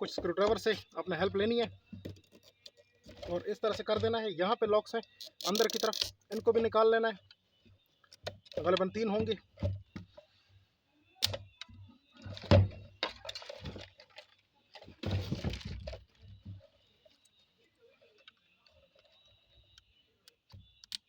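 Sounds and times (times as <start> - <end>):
plastic clips clicking and scraping: 5.0 - 6.6.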